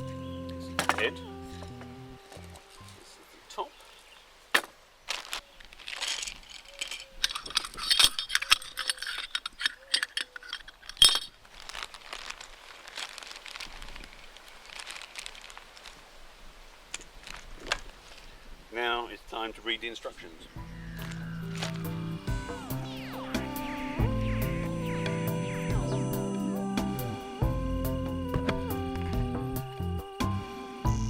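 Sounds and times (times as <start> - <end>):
small hard items clinking: 4.6 - 16.0
packaging rustling: 4.6 - 16.3.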